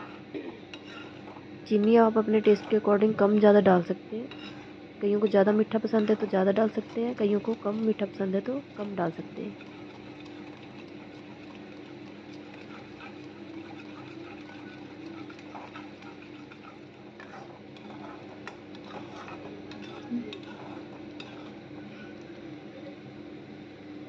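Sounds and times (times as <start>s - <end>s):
ladle stirring and scraping: 0.0s - 3.2s, 4.2s - 22.4s
faint sizzle: 0.0s - 24.0s
steady low hum: 0.0s - 24.0s.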